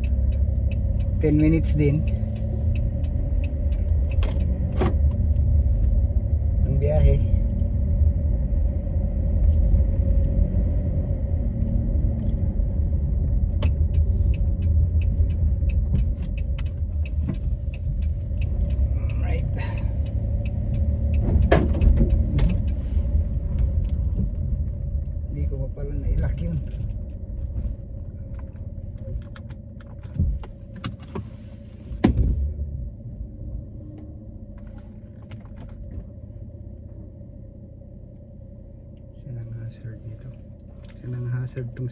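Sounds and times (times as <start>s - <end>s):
turn signal clicking: 0.0s - 7.6s, 11.4s - 32.6s
car driving rumble: 0.0s - 41.9s.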